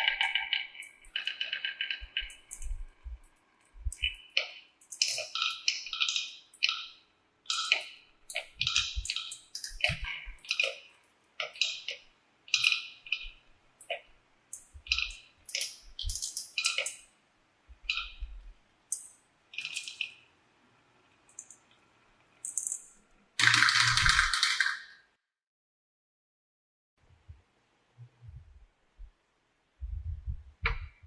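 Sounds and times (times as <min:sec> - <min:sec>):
marbles clattering down marble run: 0:23.4 - 0:24.9.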